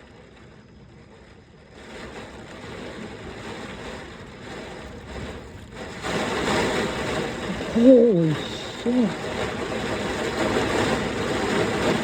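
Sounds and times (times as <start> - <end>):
heavy rain: 0.0 - 12.0
wind gusting: 6.6 - 10.1.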